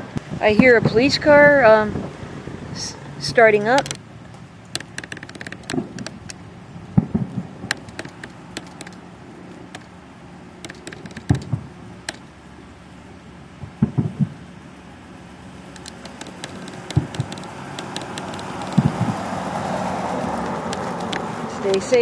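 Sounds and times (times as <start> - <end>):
fireworks pops and crackles: 4.7 - 6.4, 7.0 - 9.0, 10.6 - 12.2, 13.6 - 14.4, 15.8 - 19.2
fireworks dull booms: 6.9 - 8.7, 11.1 - 11.7, 13.6 - 14.4, 16.1 - 17.9, 18.8 - 19.2.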